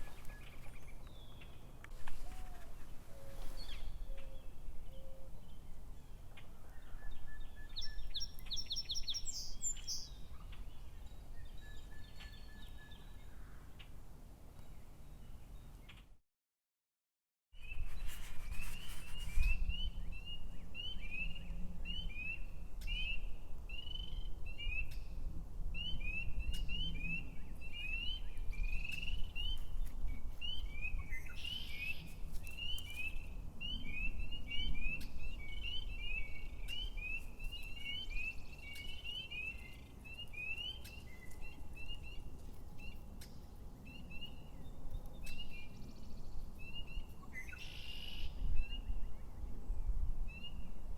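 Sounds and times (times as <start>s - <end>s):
bird chirping: 0.0s - 13.9s, 25.8s - 49.2s.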